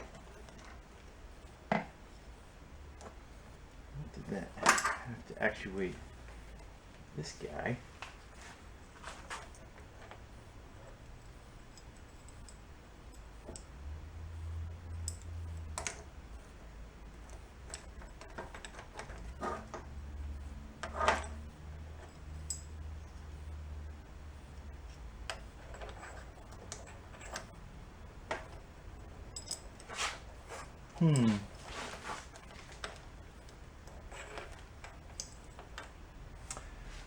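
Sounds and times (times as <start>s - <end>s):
metal parts clicking and tapping: 4.4s - 5.2s, 9.3s - 23.6s, 24.6s - 36.8s.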